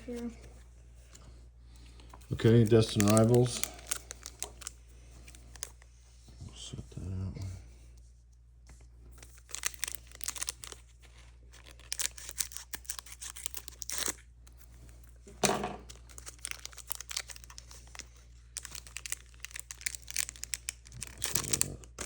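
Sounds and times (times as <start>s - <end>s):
foil wrapper crinkling and tearing: 2.2s - 5.8s, 9.1s - 15.2s, 15.8s - 22.0s.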